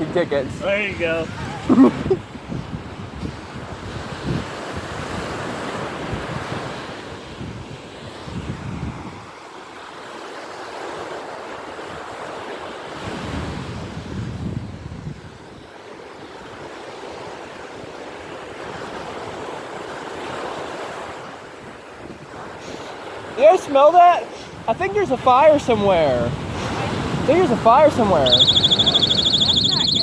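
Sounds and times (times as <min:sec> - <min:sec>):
wind buffeting microphone: 0:00.0 - 0:09.1, 0:13.0 - 0:15.5, 0:24.4 - 0:30.0
ocean surf washing on beach: 0:00.0 - 0:29.7.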